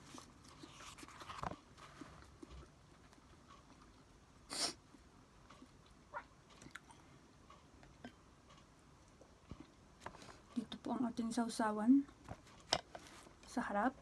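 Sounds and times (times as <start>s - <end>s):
person chewing food: 0.0s - 10.3s.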